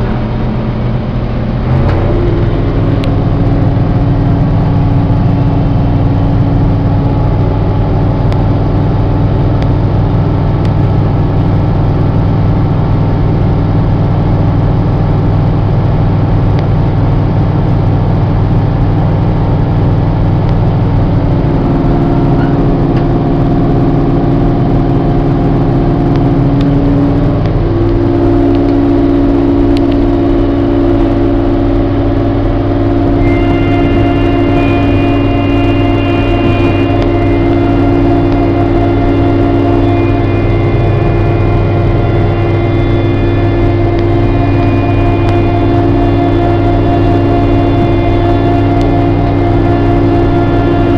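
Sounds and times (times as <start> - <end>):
combine harvester engine drone: 0.0 - 50.9
higher whine: 0.0 - 50.9.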